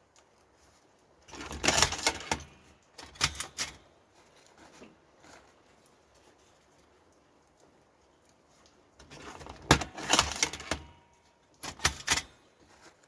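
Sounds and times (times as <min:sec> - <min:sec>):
rolling machine rattling clicks: 0:01.3 - 0:03.8, 0:09.0 - 0:11.0, 0:11.6 - 0:12.4.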